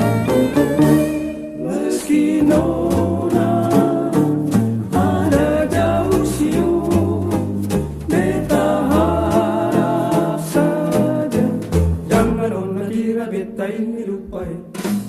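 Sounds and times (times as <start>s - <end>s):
sliding steel guitar melody: 0.0s - 1.8s
guitar ukulele and bass accompaniment: 0.0s - 15.0s.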